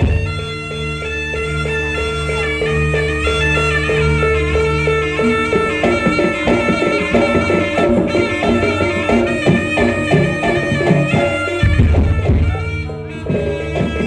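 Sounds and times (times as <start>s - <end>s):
quick struck percussion beat: 0.0s - 1.1s, 5.2s - 14.0s
held melody over low drone: 0.0s - 14.0s.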